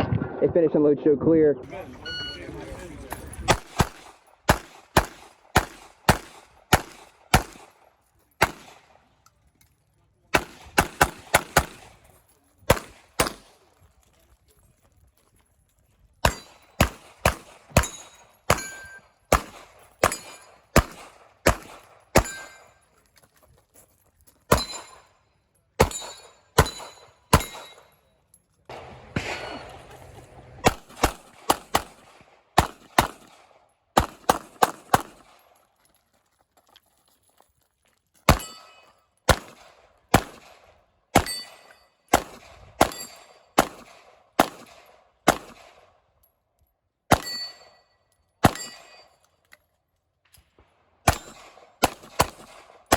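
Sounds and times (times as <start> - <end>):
pistol shots: 3.4 - 9.1, 10.3 - 12.1, 12.7 - 13.6, 16.2 - 22.8, 24.5 - 25.2, 25.8 - 28.0, 28.7 - 35.6, 38.3 - 46.0, 47.1 - 47.7, 48.4 - 49.1, 51.0 - 52.9.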